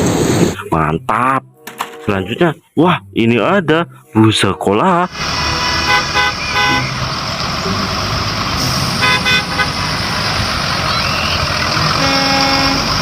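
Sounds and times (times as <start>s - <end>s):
bus engine running: 0.0s - 1.0s, 3.7s - 13.0s
multi-tone bus horn: 5.1s - 10.4s, 11.0s - 13.0s.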